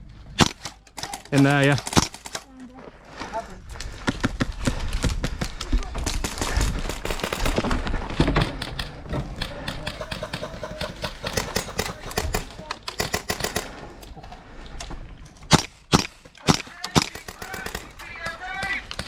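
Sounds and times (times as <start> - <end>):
airsoft gunfire: 8.5 - 13.8.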